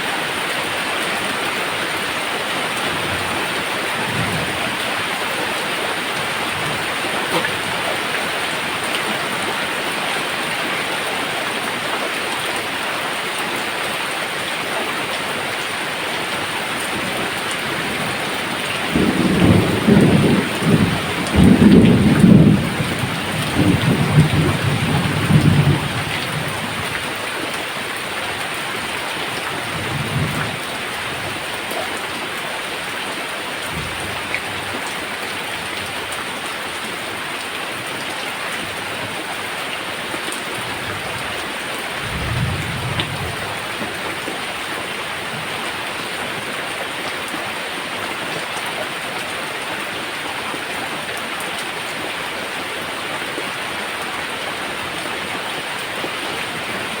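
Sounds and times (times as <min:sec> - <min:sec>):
steady rain falling: 0:00.0 - 0:57.0
thunder rumbling: 0:17.2 - 0:26.9, 0:42.0 - 0:43.9.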